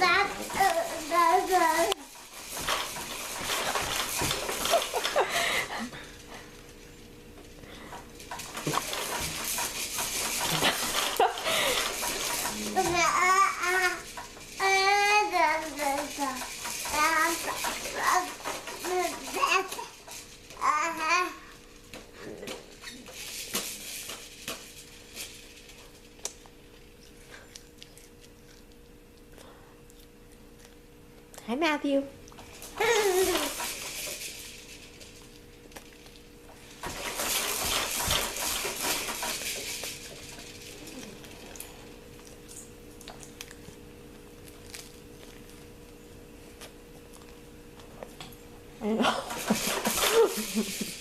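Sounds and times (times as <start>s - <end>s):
rustling: 0.0s - 5.5s
faint steady hum: 10.2s - 36.8s.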